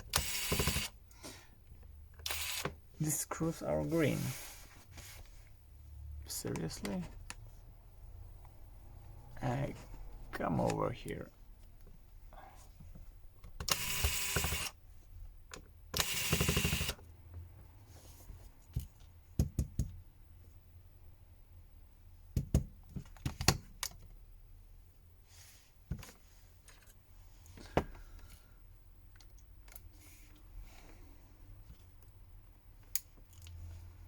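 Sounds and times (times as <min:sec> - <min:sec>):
noisy bursts of hand tools: 0:00.0 - 0:01.0, 0:02.2 - 0:02.8, 0:13.6 - 0:14.8, 0:15.9 - 0:17.0.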